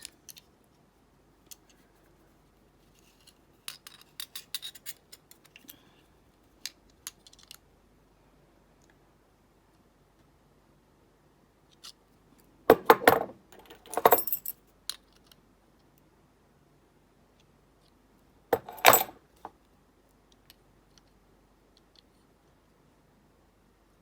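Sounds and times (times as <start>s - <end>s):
padlocks and keys clinking: 12.7s - 14.6s, 18.6s - 19.2s.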